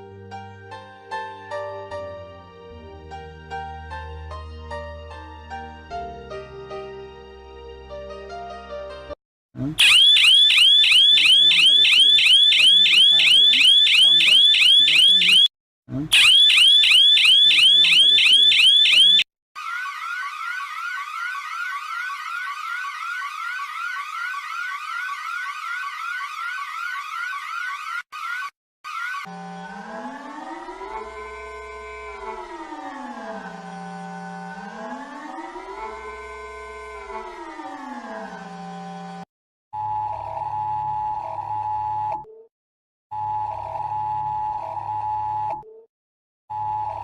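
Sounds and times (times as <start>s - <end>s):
siren rising sweeps: 9.7s - 28.0s, 29.0s - 39.2s
electronic warning signal: 9.8s - 15.5s, 16.2s - 19.2s.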